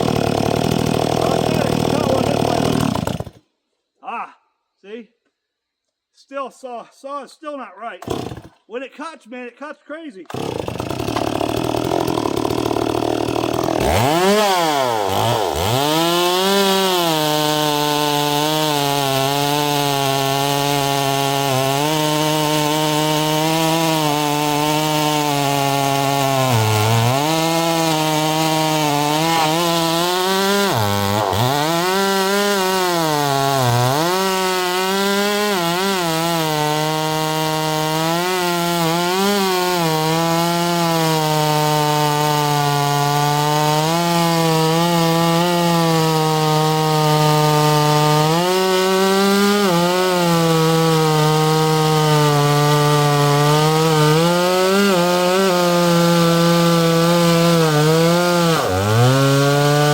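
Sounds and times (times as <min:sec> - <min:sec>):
chainsaw cutting wood: 0:00.0 - 0:03.5, 0:08.0 - 0:08.6, 0:10.3 - 0:59.9.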